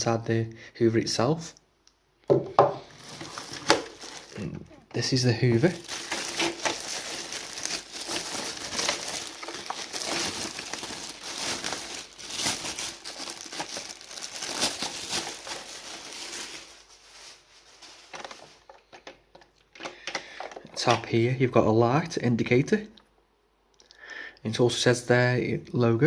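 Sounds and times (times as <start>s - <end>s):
packaging crinkling: 2.8s - 20.7s.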